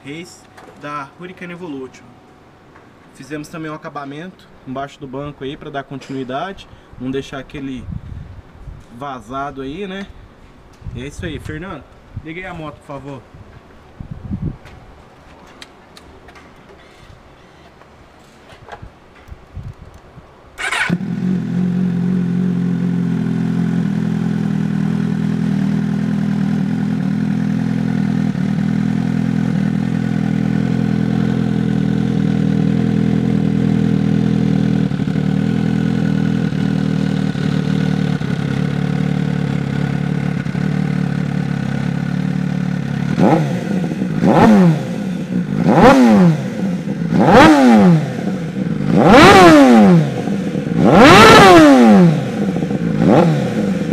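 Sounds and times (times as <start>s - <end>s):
motorcycle engine idling: 20.6s - 47.2s
engine revving throttle blips: 20.6s - 53.9s.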